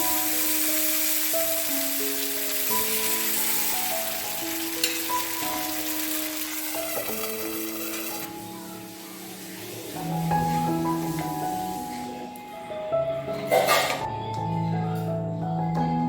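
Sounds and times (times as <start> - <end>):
batter sizzling in hot oil: 0.0 - 12.1
background music: 0.0 - 16.0.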